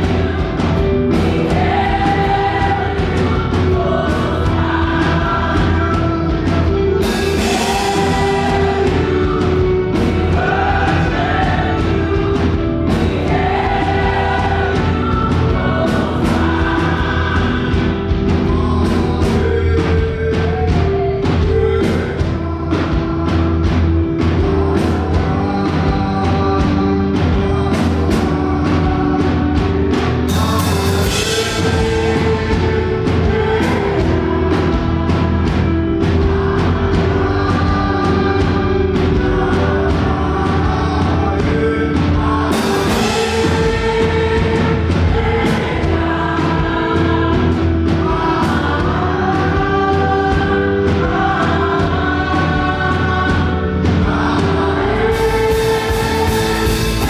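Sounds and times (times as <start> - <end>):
gospel band playing: 0.0 - 57.0
group singing: 0.0 - 57.0.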